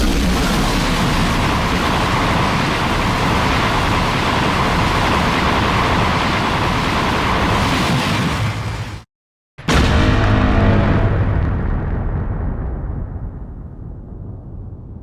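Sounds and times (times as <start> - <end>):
deep rumble: 0.0 - 6.1, 9.6 - 15.0.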